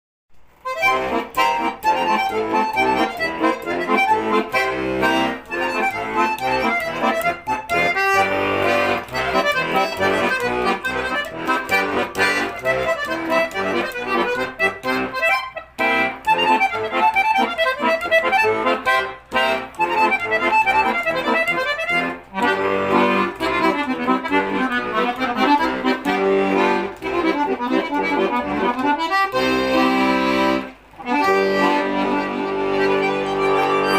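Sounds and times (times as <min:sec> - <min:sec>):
button accordion tune: 0:00.5 - 0:33.9.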